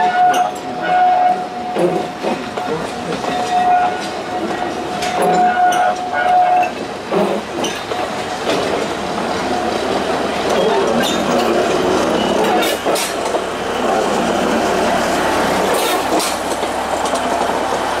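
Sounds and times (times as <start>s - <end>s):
diesel locomotive rumbling: 0.0s - 18.0s
rolling stock clanks: 15.7s - 17.8s.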